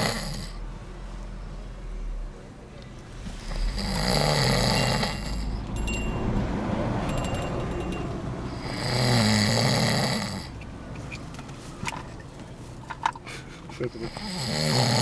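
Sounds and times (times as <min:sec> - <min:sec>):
man snoring: 0:00.0 - 0:00.6, 0:03.4 - 0:05.5, 0:08.6 - 0:10.5, 0:13.9 - 0:15.0.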